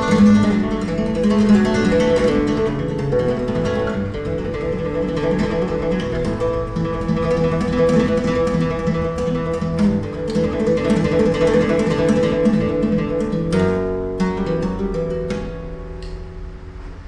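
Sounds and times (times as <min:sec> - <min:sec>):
solo flamenco guitar: 0:00.0 - 0:17.0.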